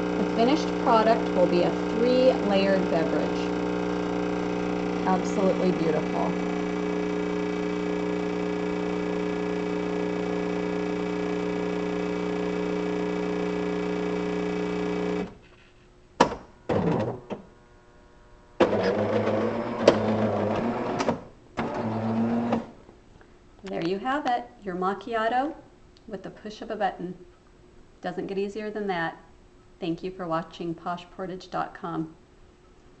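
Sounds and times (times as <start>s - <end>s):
espresso machine humming: 0.0s - 15.4s.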